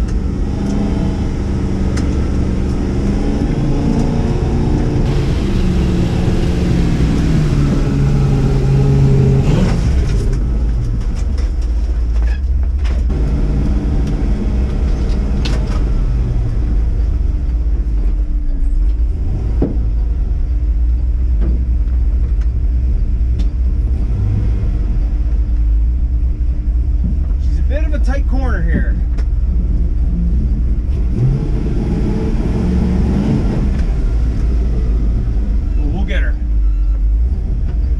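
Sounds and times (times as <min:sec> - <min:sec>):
truck engine revving: 0:00.0 - 0:11.3, 0:13.1 - 0:17.4, 0:29.3 - 0:35.8
deep engine rumble: 0:00.0 - 0:37.9.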